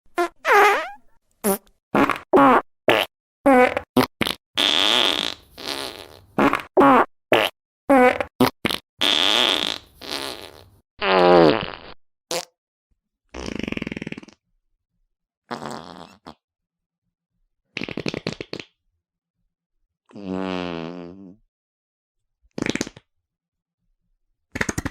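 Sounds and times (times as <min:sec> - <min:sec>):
fart sound effects: 0:00.1 - 0:12.5, 0:13.3 - 0:14.4, 0:15.5 - 0:16.4, 0:17.8 - 0:18.7, 0:20.1 - 0:21.4, 0:22.6 - 0:23.0.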